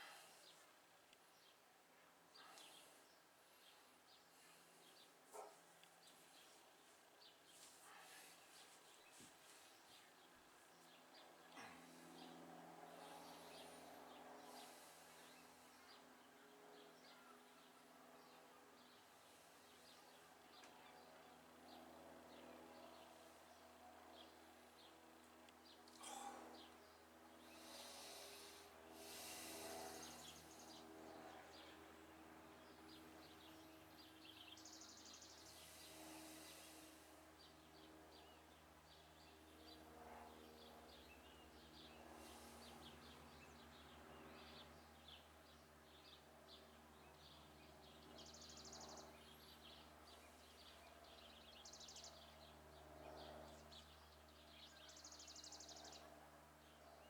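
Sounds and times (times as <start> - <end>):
faint bird chirps and trills: 2.3 - 57.0.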